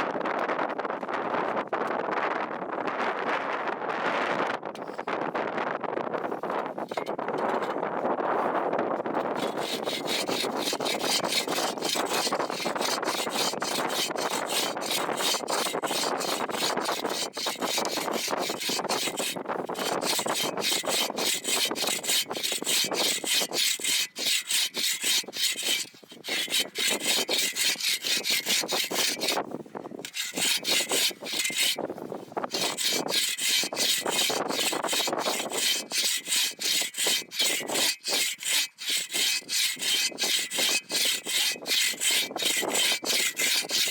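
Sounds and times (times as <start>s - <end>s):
hand saw cutting wood: 9.4s - 29.4s, 30.0s - 43.9s.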